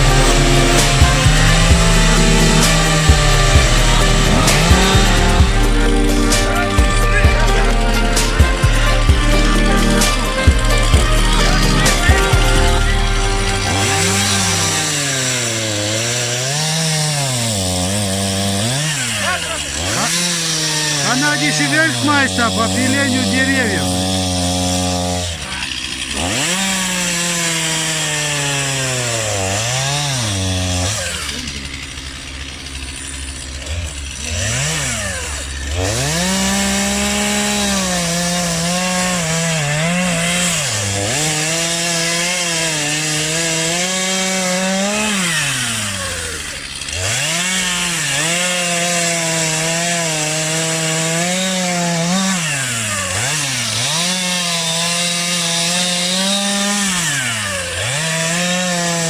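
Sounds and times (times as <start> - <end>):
chainsaw cutting wood: 0.0 - 59.0.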